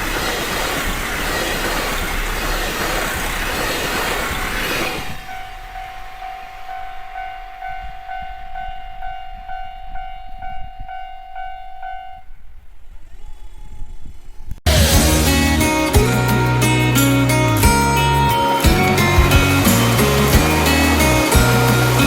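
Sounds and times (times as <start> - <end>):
level crossing warning bell: 5.2 - 12.4, 15.0 - 22.0
low rumble: 12.4 - 22.0.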